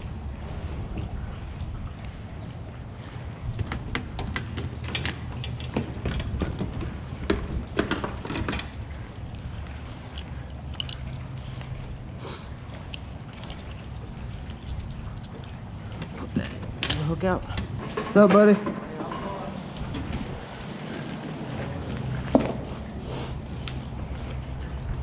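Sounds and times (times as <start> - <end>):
low wind rumble on microphone: 0.0 - 25.0
sharp clicks and knocks: 3.6 - 9.4.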